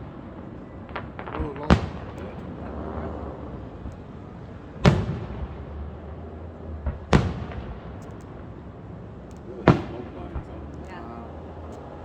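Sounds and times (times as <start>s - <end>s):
fireworks shell bursts booming: 9.4s - 12.0s.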